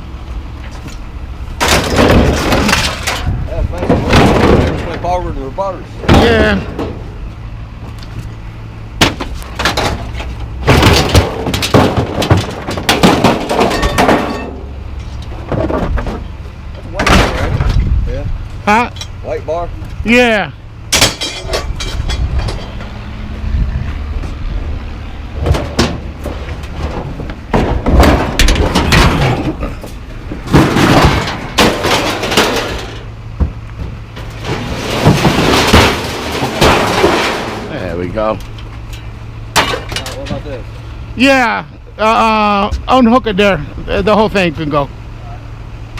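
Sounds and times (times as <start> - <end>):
steady low hum: 0.0 - 45.9
scrap metal clanking and crashing: 1.5 - 7.3, 9.0 - 23.0, 25.3 - 41.4.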